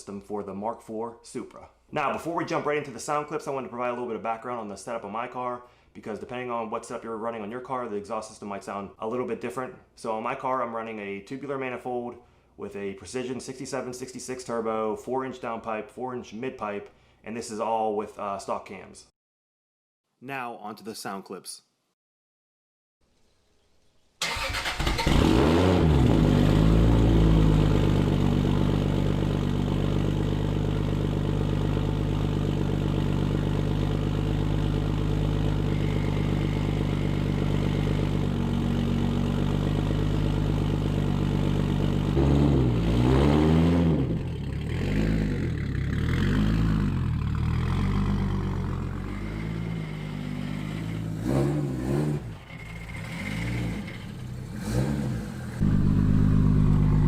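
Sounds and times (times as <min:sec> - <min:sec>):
car engine idling and revving: 0:24.7 - 0:57.0.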